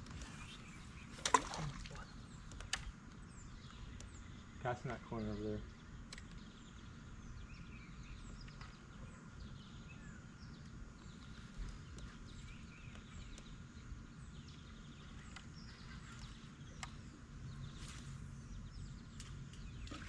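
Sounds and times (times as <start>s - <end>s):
birds chirping and singing: 0.0s - 20.0s.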